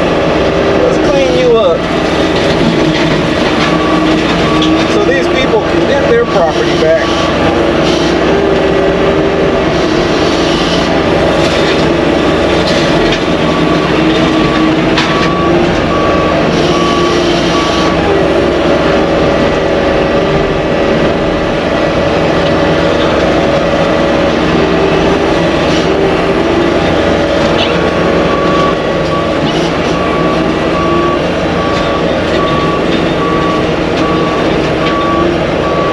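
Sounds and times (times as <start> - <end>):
skid steer engine running: 0.0 - 35.9
backup alarm beeping: 3.6 - 7.4, 12.2 - 18.5, 24.6 - 35.9.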